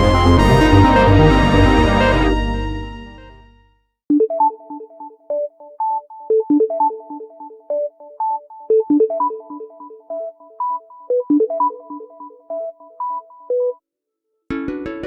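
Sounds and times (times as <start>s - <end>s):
synth electric piano ringtone: 4.1s - 13.7s.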